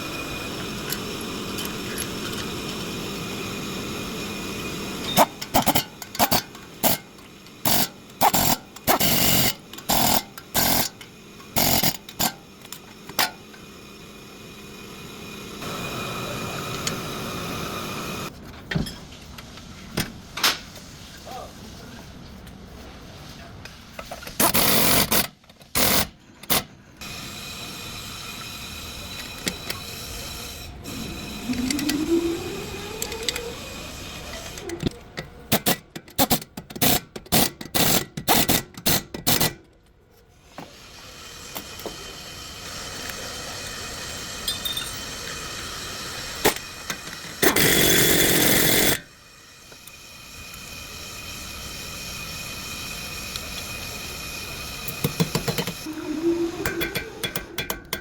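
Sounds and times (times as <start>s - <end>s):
motor winding up: 0.0s - 15.8s, 25.8s - 35.1s, 40.9s - 57.6s
steady background noise: 0.0s - 40.3s
loud hissing burst: 29.9s - 34.5s.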